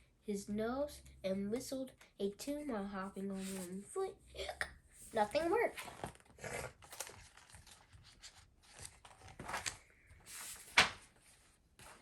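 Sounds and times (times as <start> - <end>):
paper rustling: 3.3 - 3.8, 5.1 - 12.0
page swish: 10.3 - 11.1.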